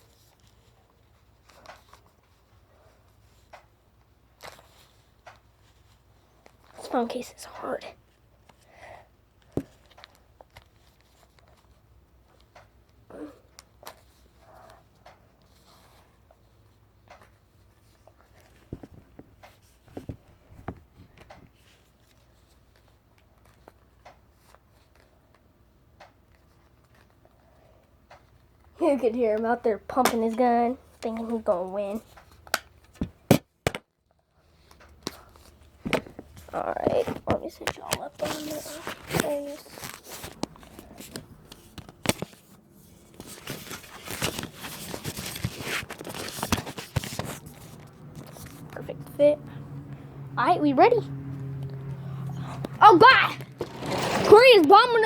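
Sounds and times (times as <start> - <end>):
phone case rubbing and scraping: 36.1 - 48.9, 52.9 - 55.0.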